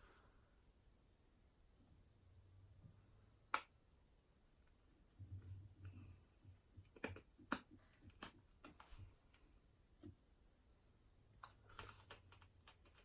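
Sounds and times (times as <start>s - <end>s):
laptop keyboard keystrokes: 6.8s - 9.0s, 11.4s - 13.0s.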